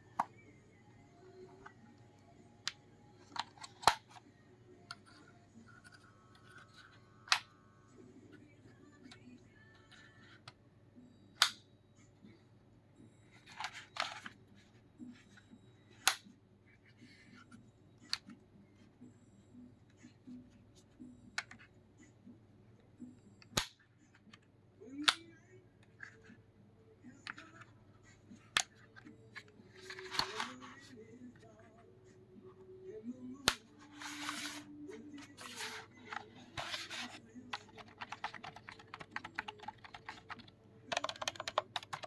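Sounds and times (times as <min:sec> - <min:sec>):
plastic keyboard clicks: 0:35.6 - 0:42.0.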